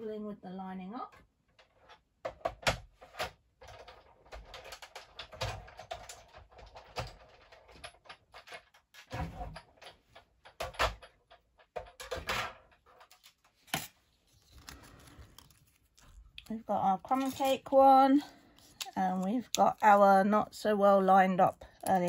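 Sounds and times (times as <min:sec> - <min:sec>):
card stock rustling: 0:13.1 - 0:22.0.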